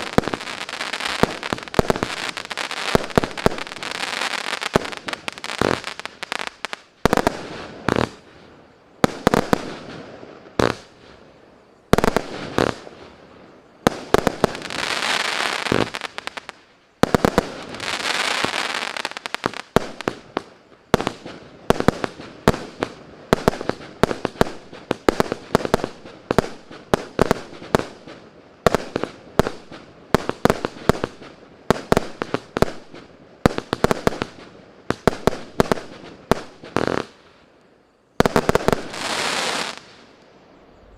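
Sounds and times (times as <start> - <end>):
firework hissing: 0.0 - 8.3, 14.0 - 20.1, 38.2 - 40.1.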